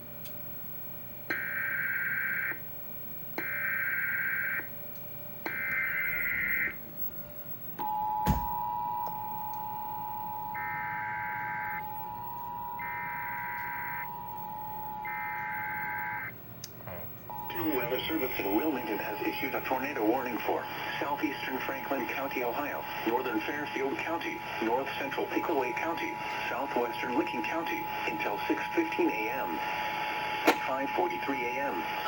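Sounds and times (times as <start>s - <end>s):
two-tone attention signal: 17.3s - 19.6s.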